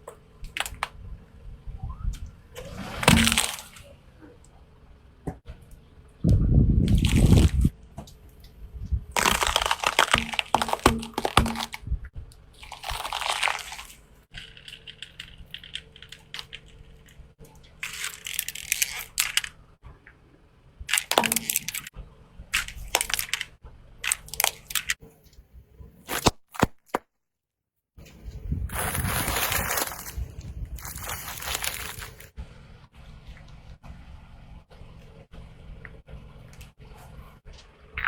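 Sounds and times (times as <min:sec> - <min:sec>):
objects crunching under car tyre: 0:02.6 - 0:04.0, 0:06.8 - 0:19.7, 0:20.8 - 0:27.0, 0:28.0 - 0:32.4.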